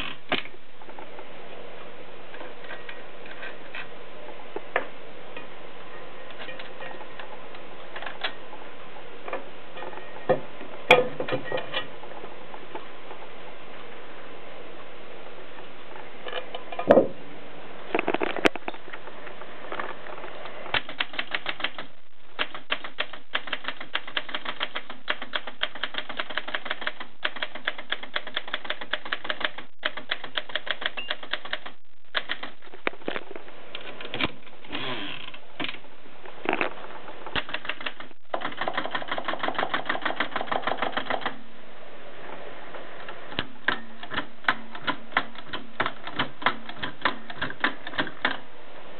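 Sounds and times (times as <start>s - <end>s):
manual typewriter keys clicking: 20.7s - 32.7s, 37.3s - 41.4s, 43.3s - 48.4s.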